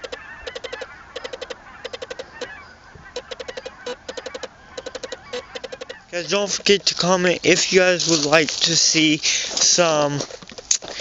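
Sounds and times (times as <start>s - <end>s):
quick sharp ticks: 0.0s - 2.6s, 3.2s - 8.2s
geese honking: 0.0s - 10.3s.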